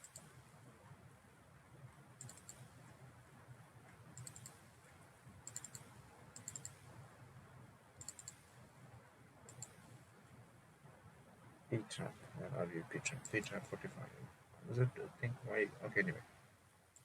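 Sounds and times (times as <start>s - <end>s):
computer mouse clicks: 0.0s - 0.4s, 2.2s - 2.9s, 4.1s - 4.8s, 5.4s - 7.0s, 8.0s - 8.6s, 9.4s - 10.0s
low steady hum: 0.0s - 17.0s.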